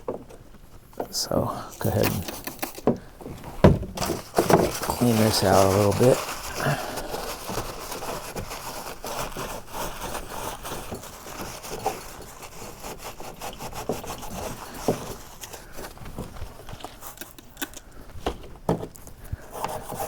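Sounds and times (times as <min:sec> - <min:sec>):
small knocks: 0:00.0 - 0:01.2, 0:02.0 - 0:05.5, 0:18.2 - 0:19.9
toothbrush scrubbing: 0:04.1 - 0:15.8.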